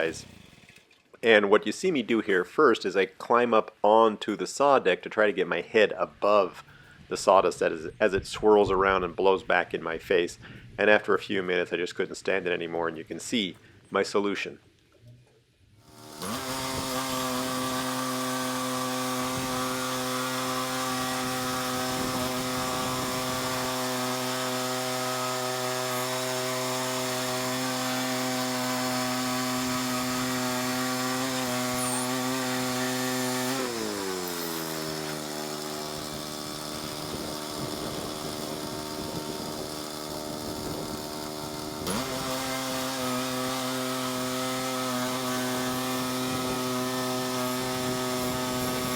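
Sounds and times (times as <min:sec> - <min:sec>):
sawmill gas engine sawing log: 0:00.0 - 0:00.9, 0:15.8 - 0:48.9.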